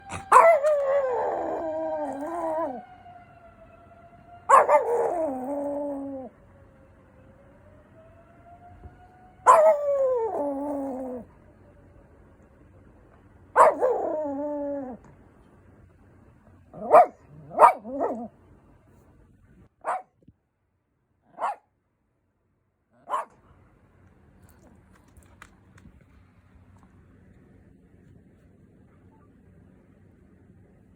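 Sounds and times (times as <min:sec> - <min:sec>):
dog howling: 0:00.0 - 0:02.9, 0:04.5 - 0:06.4, 0:09.4 - 0:11.3, 0:13.6 - 0:15.1
faint fire engine siren: 0:00.0 - 0:17.0
small dog barking: 0:00.1 - 0:01.0, 0:04.5 - 0:05.7, 0:09.4 - 0:11.0, 0:13.5 - 0:14.2, 0:16.7 - 0:18.3, 0:19.8 - 0:20.2, 0:21.2 - 0:21.7, 0:23.0 - 0:23.4.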